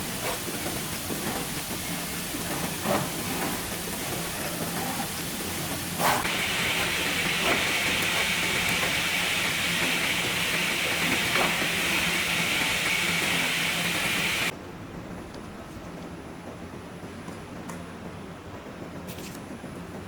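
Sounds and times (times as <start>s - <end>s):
cutting machine hissing: 5.4s - 14.5s.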